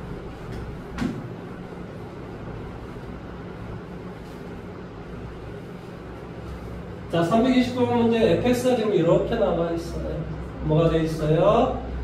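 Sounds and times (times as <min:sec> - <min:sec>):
low electrical hum: 0:00.0 - 0:12.0.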